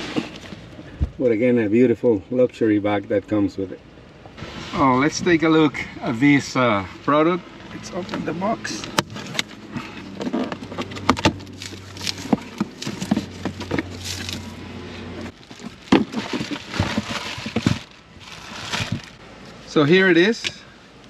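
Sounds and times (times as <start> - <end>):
cardboard packaging crackling: 8.8 - 19.2.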